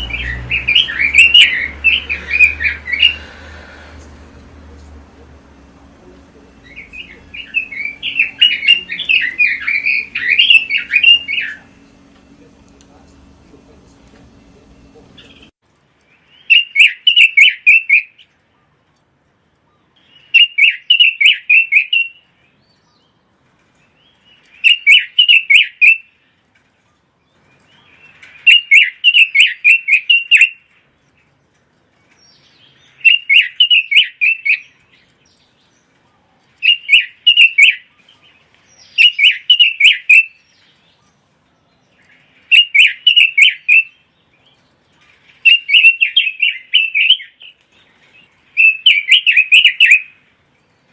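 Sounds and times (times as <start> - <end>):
bird singing warbled phrases: 0.0 - 15.5, 36.6 - 40.8, 42.5 - 44.1, 45.4 - 50.2.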